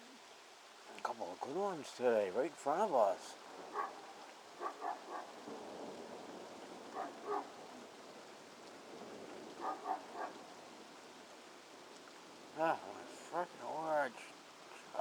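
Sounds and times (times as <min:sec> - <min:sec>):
rain falling: 0:00.0 - 0:15.0
dog barking: 0:03.7 - 0:05.5, 0:06.9 - 0:07.6, 0:09.6 - 0:10.4.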